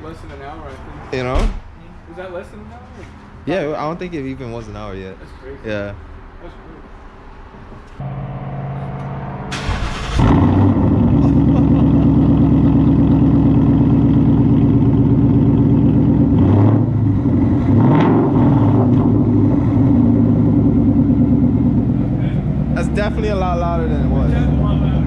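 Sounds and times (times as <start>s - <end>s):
car engine starting: 8.0s - 25.0s
loud car exhaust idling: 8.0s - 25.0s.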